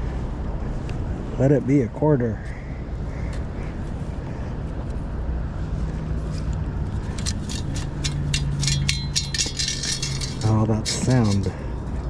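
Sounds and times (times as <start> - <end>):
wind: 0.0 - 12.0
sand scoop rattling: 7.1 - 11.5.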